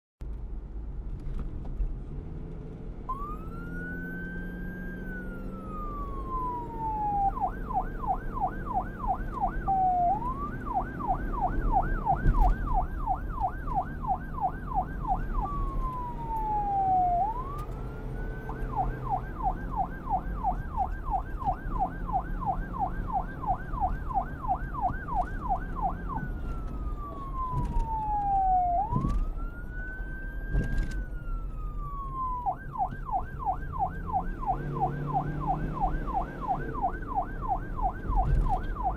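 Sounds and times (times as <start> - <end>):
low vehicle rumble: 0.2 - 38.9
police siren wailing and yelping: 3.1 - 38.9.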